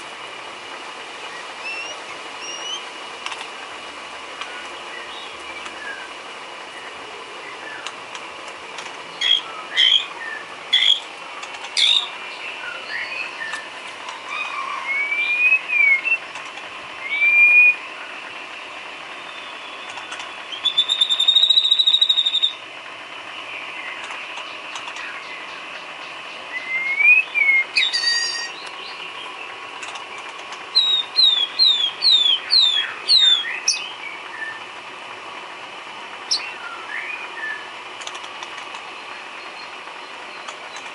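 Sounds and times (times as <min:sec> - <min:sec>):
bird singing whistled notes: 0:01.3 - 0:02.9, 0:04.9 - 0:06.1, 0:09.2 - 0:11.0, 0:11.8 - 0:13.6, 0:14.3 - 0:16.3, 0:17.0 - 0:18.2, 0:19.2 - 0:22.6, 0:23.5 - 0:29.3, 0:30.7 - 0:34.6, 0:36.3 - 0:37.7.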